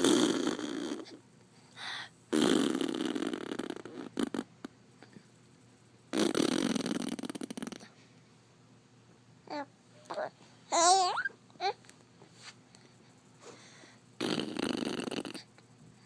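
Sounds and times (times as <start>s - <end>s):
baby blowing raspberries: 6.1s - 7.6s, 14.2s - 15.5s.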